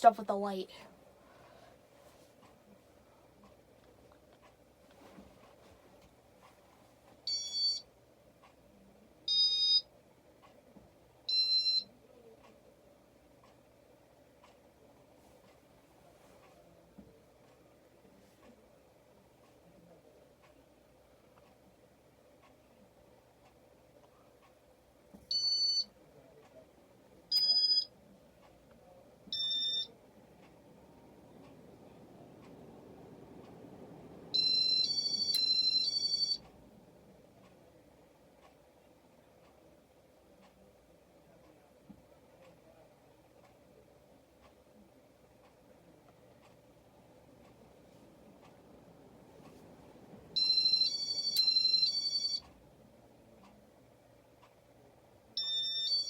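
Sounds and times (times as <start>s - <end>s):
ceiling fan control beeps: 7.1s - 8.6s, 9.2s - 10.0s, 11.2s - 12.5s, 25.2s - 26.6s, 27.3s - 28.6s, 29.2s - 36.8s, 46.4s - 52.6s, 55.2s - 56.0s
electronic beeps: 29.4s - 29.9s, 34.4s - 36.4s.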